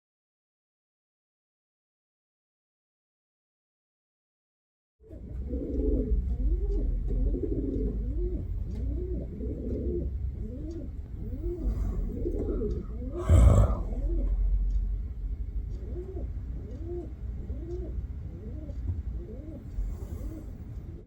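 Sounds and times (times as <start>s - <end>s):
pigeons cooing: 5.1s - 14.4s, 15.8s - 21.0s.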